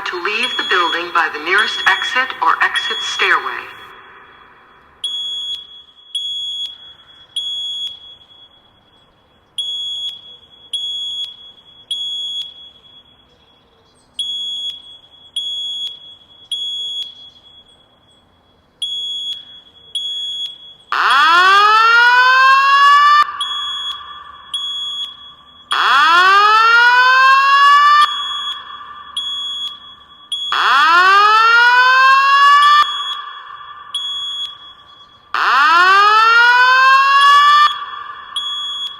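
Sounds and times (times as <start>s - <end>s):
whooping alarm tone: 0.0s - 5.6s, 21.0s - 38.9s
fire alarm beeping: 0.0s - 38.9s.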